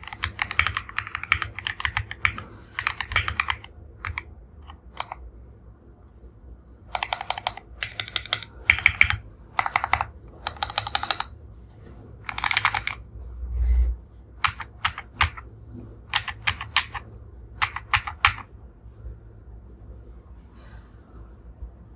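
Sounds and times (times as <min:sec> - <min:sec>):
typing on mechanical keyboard: 0:00.0 - 0:05.2, 0:06.9 - 0:11.4, 0:12.2 - 0:13.1, 0:14.4 - 0:15.5, 0:16.1 - 0:18.5.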